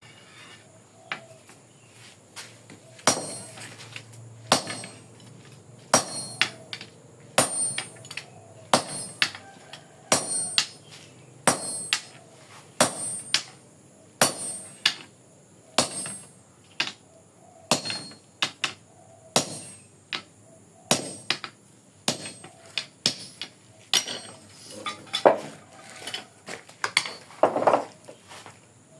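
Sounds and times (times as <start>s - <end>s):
hammer striking steel: 3.0s - 3.6s, 4.5s - 5.1s, 5.9s - 6.6s, 7.4s - 9.4s, 10.1s - 10.8s, 11.5s - 12.1s, 17.7s - 18.2s.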